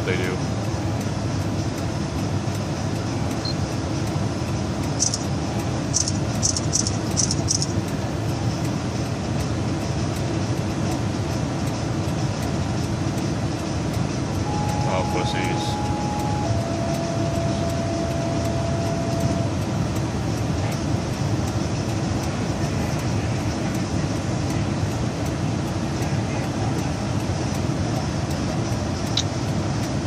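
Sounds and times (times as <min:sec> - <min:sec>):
vehicle running: 0:00.0 - 0:30.0
faint steady tone: 0:14.3 - 0:20.8.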